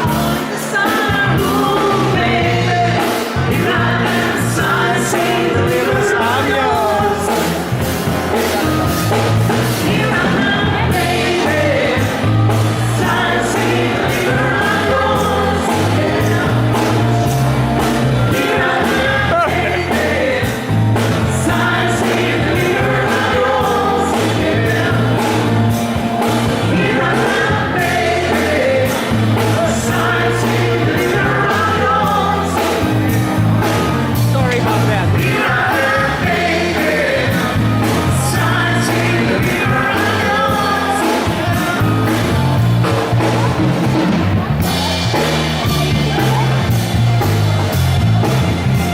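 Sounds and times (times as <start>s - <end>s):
drum beat and bass line: 0.0s - 48.9s
pop music with singer: 0.0s - 48.9s.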